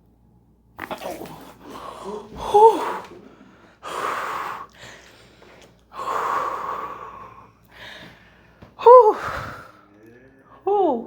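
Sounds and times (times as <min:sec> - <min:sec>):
person breathing heavily: 0:01.2 - 0:09.8.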